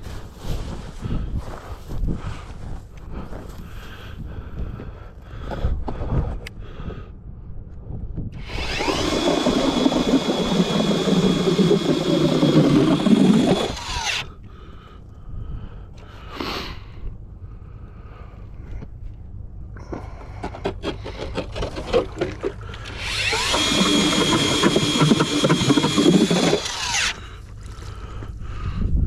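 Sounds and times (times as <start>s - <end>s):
electric ice auger drilling: 8.4s - 14.3s, 22.8s - 27.2s.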